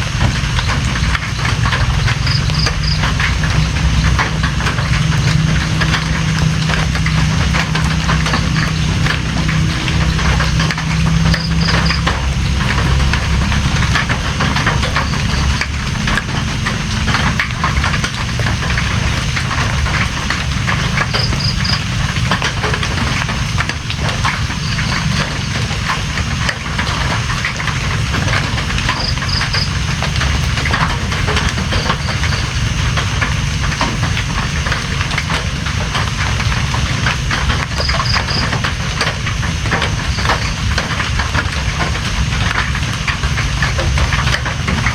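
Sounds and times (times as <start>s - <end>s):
heavy rain: 0.0s - 44.9s
low rumble: 3.4s - 35.2s.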